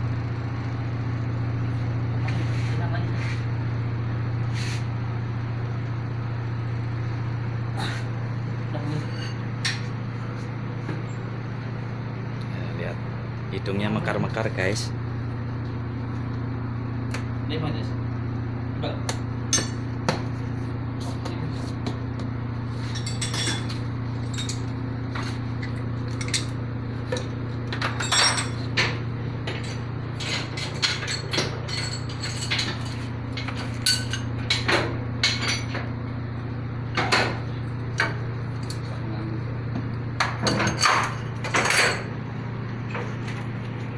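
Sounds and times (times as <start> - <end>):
metal tools clinking on engine parts: 22.8 - 24.7, 27.7 - 35.8, 40.4 - 42.1.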